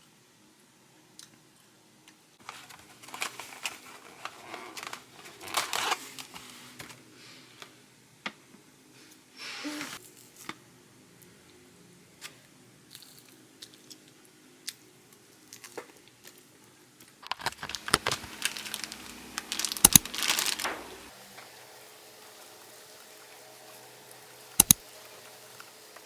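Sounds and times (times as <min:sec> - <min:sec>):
crinkling and tearing: 0:02.4 - 0:06.6, 0:17.2 - 0:21.1
sharp clicks: 0:19.6 - 0:20.8, 0:24.6 - 0:24.8.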